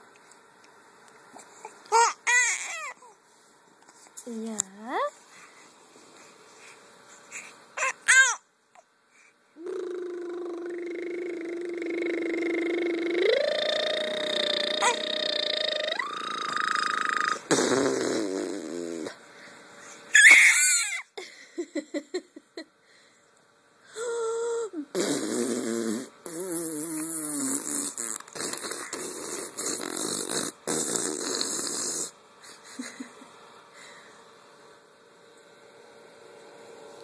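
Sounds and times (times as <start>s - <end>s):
baby squealing and babbling: 1.9s - 3.1s, 7.8s - 8.4s, 14.6s - 17.4s, 20.1s - 21.1s.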